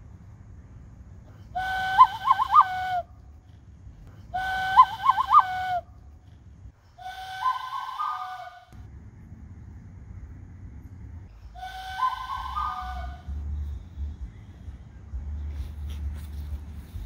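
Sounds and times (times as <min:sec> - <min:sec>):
faint low rumble: 0:00.0 - 0:01.6, 0:08.6 - 0:17.0
whistle-like pitched tone: 0:01.6 - 0:03.1, 0:04.4 - 0:05.9, 0:07.0 - 0:08.8, 0:11.6 - 0:13.6.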